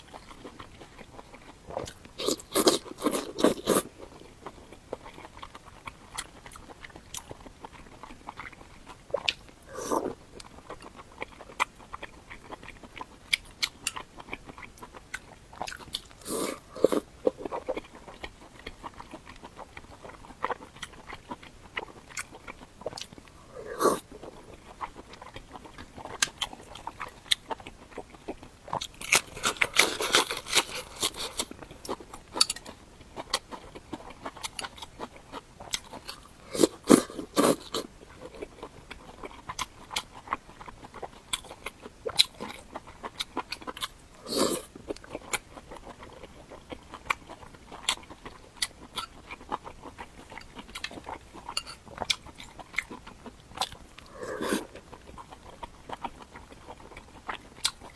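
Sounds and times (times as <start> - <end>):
person biting and chewing food: 21.7 - 33.5, 35.6 - 37.9, 47.0 - 56.3.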